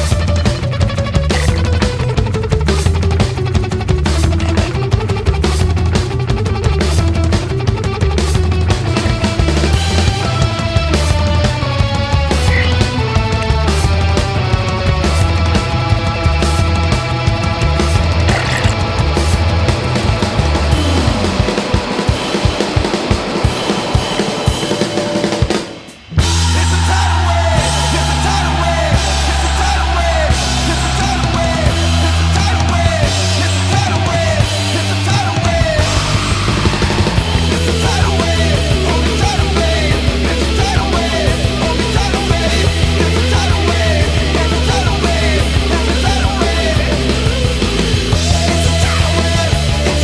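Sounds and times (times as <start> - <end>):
rock music with drums and bass: 0.0 - 50.0.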